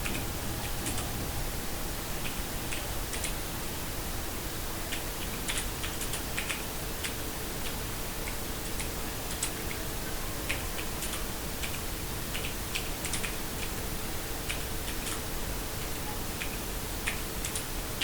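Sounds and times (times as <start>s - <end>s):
steady background hiss: 0.0s - 14.4s.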